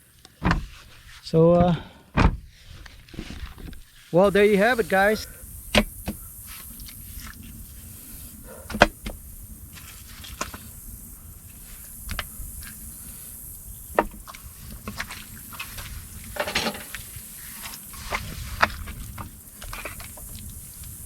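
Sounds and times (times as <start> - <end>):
low background noise: 0.0 - 21.0
camping gear knocking: 0.2 - 4.0, 8.5 - 9.3, 13.9 - 20.3.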